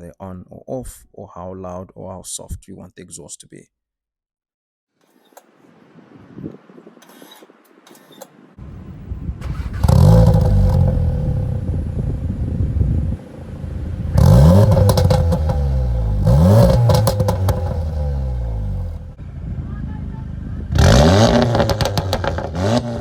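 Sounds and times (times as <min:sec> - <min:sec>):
car engine revving: 0:08.6 - 0:23.0.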